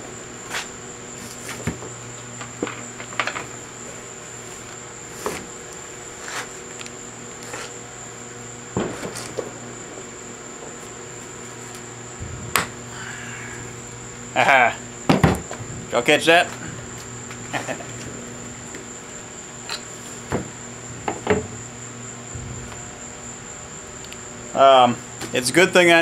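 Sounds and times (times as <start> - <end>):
high-pitched whine: 6.8 - 26.0
low hum: 7.1 - 25.2.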